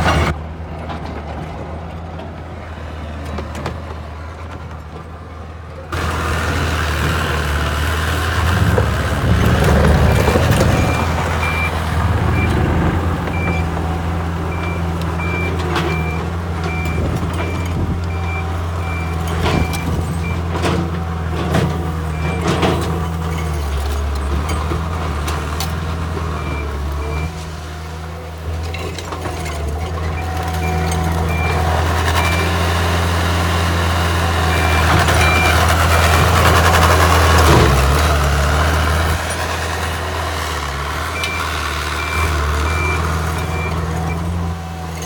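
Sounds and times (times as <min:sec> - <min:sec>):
diesel engine running: 0:00.0 - 0:45.0
reverse alarm beeping: 0:09.8 - 0:13.8, 0:14.5 - 0:20.4, 0:34.4 - 0:36.2.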